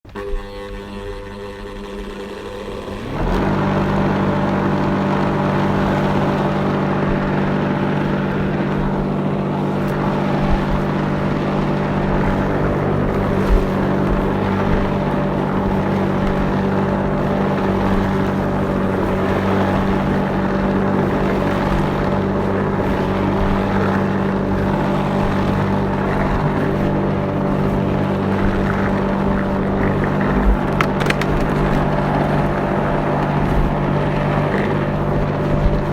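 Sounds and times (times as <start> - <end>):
lawnmower engine running: 0.0 - 35.9.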